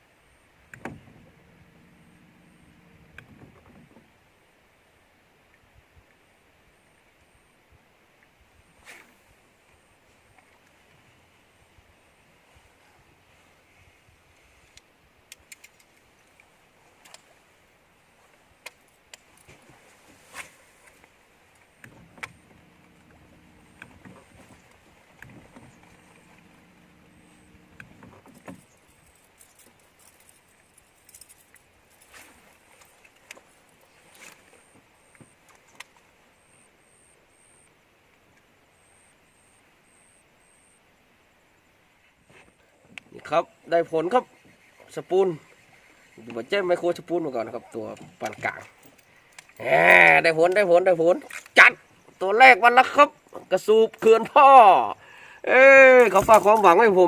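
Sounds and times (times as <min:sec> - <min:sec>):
faint clicks: 0:14.6 - 0:17.3, 0:27.3 - 0:32.1, 0:47.9 - 0:49.6
sharp clicks and light knocks: 0:14.7 - 0:17.3
faint high-pitched chirp: 0:38.7 - 0:41.7.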